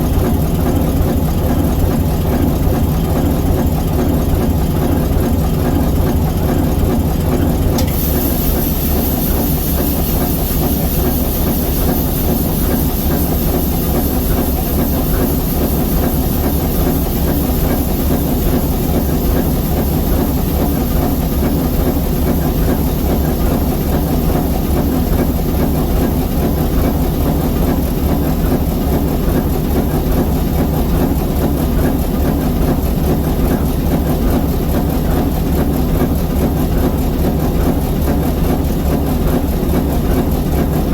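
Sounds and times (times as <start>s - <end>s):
locomotive diesel engine running: 0.0s - 40.9s
high hiss: 7.8s - 25.1s.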